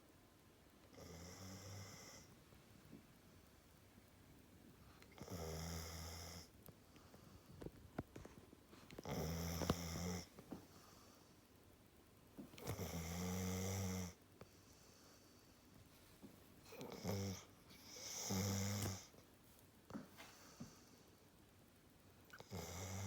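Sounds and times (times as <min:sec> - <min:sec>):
quiet breathing: 0:00.8 - 0:03.8, 0:04.6 - 0:11.7, 0:12.4 - 0:19.3, 0:19.9 - 0:21.4
dog snoring: 0:00.9 - 0:02.3, 0:05.1 - 0:06.5, 0:09.0 - 0:10.3, 0:12.6 - 0:14.2, 0:16.7 - 0:19.1, 0:22.3 - 0:23.0.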